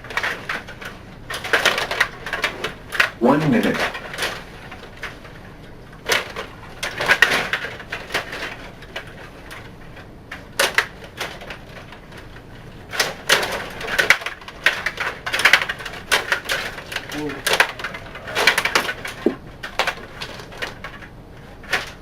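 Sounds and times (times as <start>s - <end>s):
table hockey clicks and clacks: 13.0s - 21.1s
puck striking players and boards: 17.5s - 20.0s.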